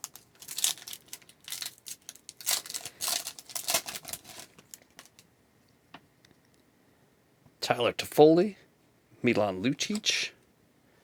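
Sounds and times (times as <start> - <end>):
wrapper crinkling and tearing: 0.0 - 5.3.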